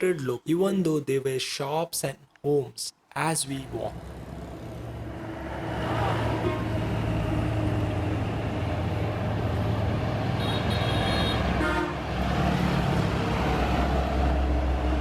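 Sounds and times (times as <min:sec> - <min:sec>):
highway traffic rumble: 0:03.4 - 0:15.0
vehicle horn toot: 0:06.4 - 0:06.7, 0:10.4 - 0:12.0.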